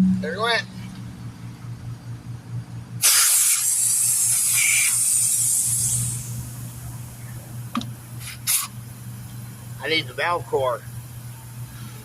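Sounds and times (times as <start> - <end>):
compressed air hissing from valve: 3.0 - 6.5, 8.2 - 8.8.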